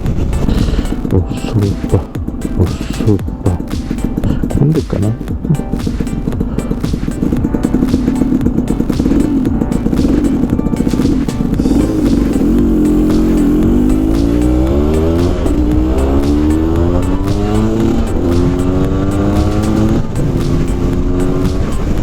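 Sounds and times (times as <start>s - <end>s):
motorcycle engine accelerating: 5.2s - 22.0s.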